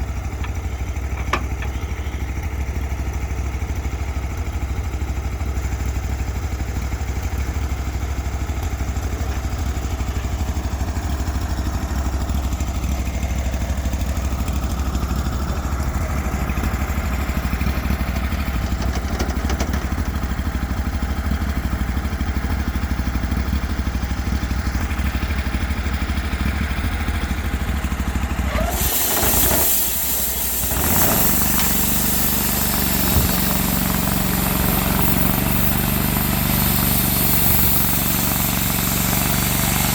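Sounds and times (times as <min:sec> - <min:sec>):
sawmill engine throbbing: 0:09.3 - 0:39.9.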